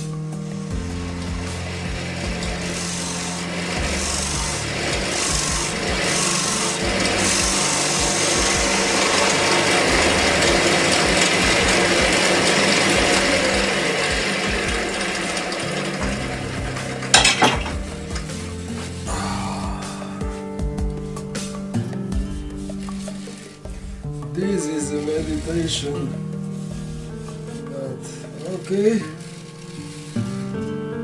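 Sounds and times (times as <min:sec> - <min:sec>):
sharp knocks: 0:00.0 - 0:19.1
tool scraping spinning wood: 0:00.4 - 0:19.1.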